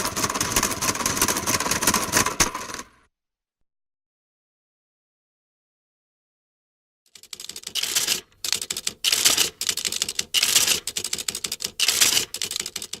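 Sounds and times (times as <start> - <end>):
calculating machine clattering: 7.2 - 13.0.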